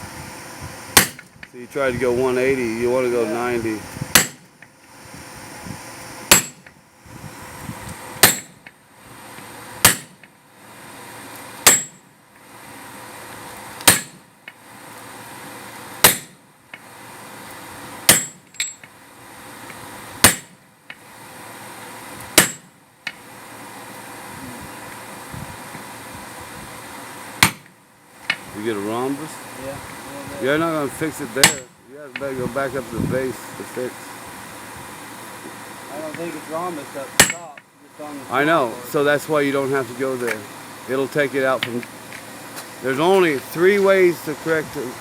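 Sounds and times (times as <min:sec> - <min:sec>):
steady hiss: 0:00.0 - 0:45.0
hammer ringing on hot steel: 0:06.3 - 0:06.7, 0:08.2 - 0:08.6, 0:09.8 - 0:10.2, 0:11.6 - 0:12.1, 0:13.9 - 0:14.2, 0:16.0 - 0:16.4, 0:18.1 - 0:18.8, 0:37.2 - 0:37.4.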